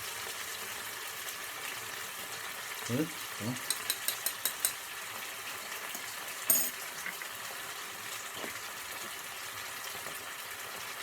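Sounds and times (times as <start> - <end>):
tomatoes sizzling in a frying pan: 0.0 - 11.0
sharp metal clink: 6.5 - 6.8.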